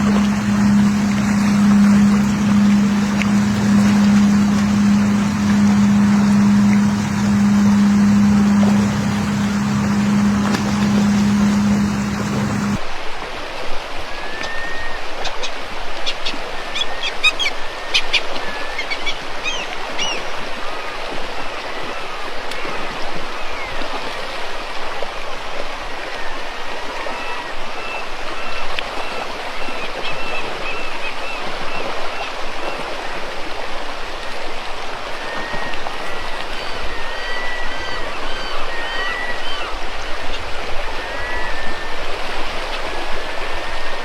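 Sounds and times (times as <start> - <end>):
birds calling: 0.0 - 12.8
river water rushing: 0.0 - 14.2.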